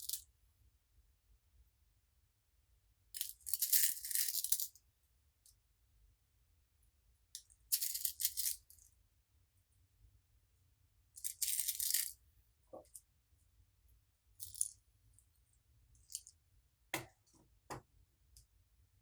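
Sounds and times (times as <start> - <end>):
beads rattling into a container: 7.7 - 8.7, 11.2 - 12.2.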